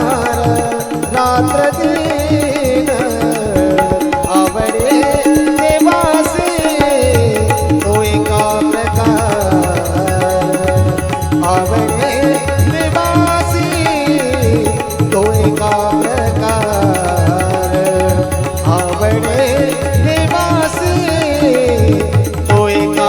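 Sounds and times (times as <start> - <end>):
tabla rhythm: 0.0 - 23.0.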